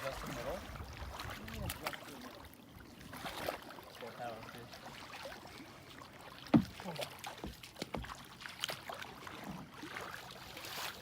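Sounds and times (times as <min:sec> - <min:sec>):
knocks and bumps against kayak: 0:06.5 - 0:08.2.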